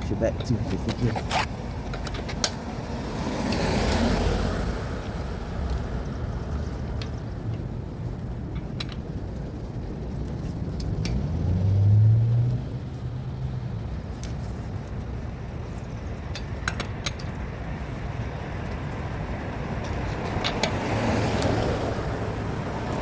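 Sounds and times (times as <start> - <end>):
road traffic rumble: 0.0 - 23.0
car driving past: 2.8 - 7.0, 10.9 - 14.0, 20.7 - 23.0.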